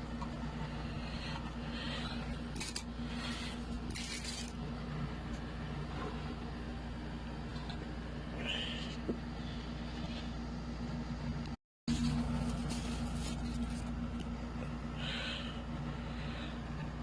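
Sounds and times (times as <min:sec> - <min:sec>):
low electrical hum: 0:00.0 - 0:17.0
packaging rustling and scraping: 0:02.5 - 0:02.9, 0:03.7 - 0:04.6, 0:11.9 - 0:14.0.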